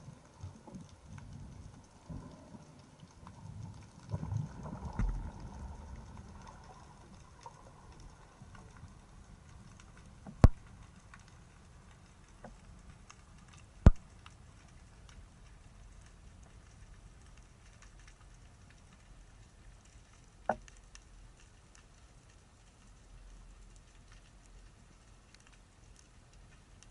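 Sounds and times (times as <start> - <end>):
low underwater rumble: 0.0 - 20.6
faint underwater crackle: 0.0 - 26.9.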